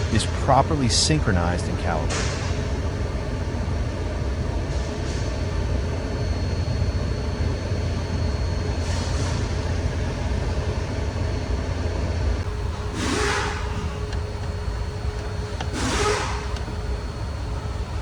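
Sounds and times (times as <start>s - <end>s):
car engine rumble: 0.0s - 18.0s
air rushing through vents: 12.4s - 18.0s.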